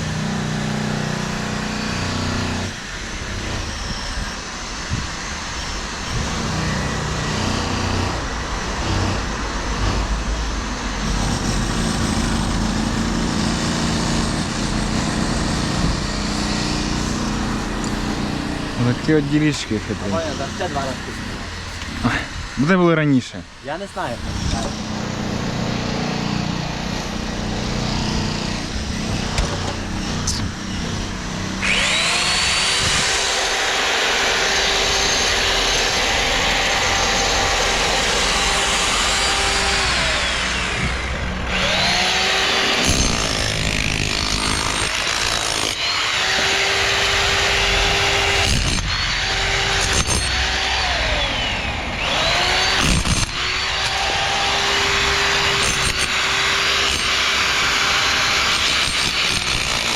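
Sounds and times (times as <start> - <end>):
dull work noise: 0.0 - 59.9
power tool motor spinning: 11.0 - 22.7, 23.8 - 59.9.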